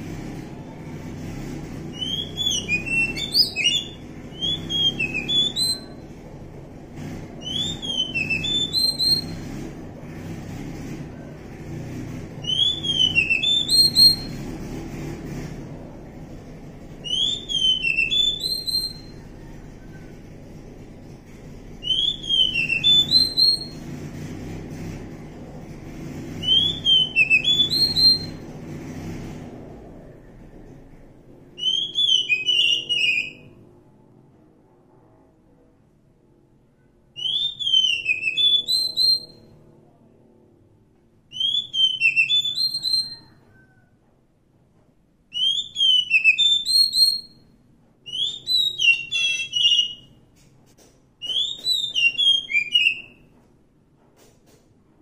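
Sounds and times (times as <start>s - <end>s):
low background rumble: 0.0s - 37.6s
bird singing whistled phrases: 2.0s - 6.0s, 7.4s - 9.4s, 12.4s - 14.4s, 17.0s - 19.2s, 21.8s - 23.8s, 26.4s - 28.4s, 31.6s - 33.5s, 37.2s - 39.4s, 41.3s - 43.8s, 45.3s - 47.4s, 48.1s - 50.1s, 51.2s - 53.2s.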